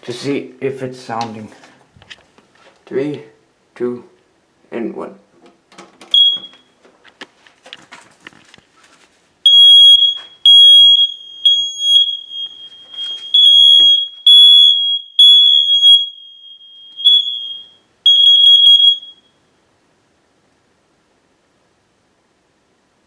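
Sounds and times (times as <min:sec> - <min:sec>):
smoke alarm beeping: 0:06.1 - 0:06.8, 0:09.4 - 0:19.4.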